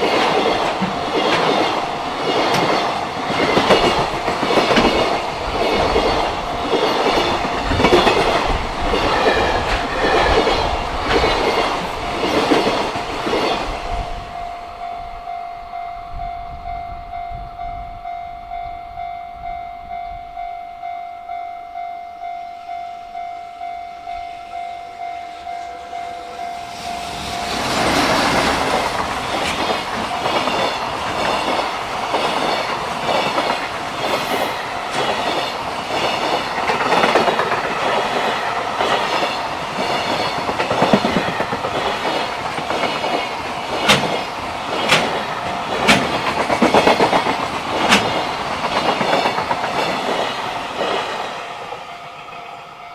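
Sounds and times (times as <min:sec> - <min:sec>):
wheels clattering over rail joints: 0:00.0 - 0:13.7, 0:27.4 - 0:51.0
level crossing bell ringing: 0:14.3 - 0:27.7.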